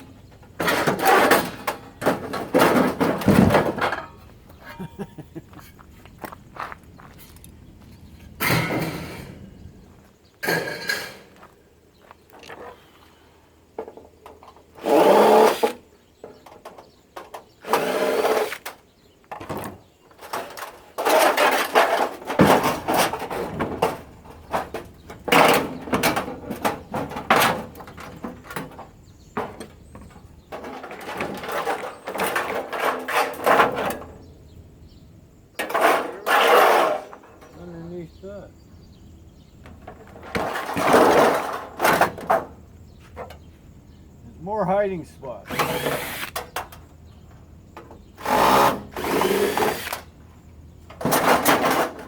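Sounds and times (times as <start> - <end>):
metal and plastic parts clattering: 0.3 - 4.3, 18.6 - 34.2, 35.6 - 37.6, 39.7 - 42.6, 50.8 - 52.0.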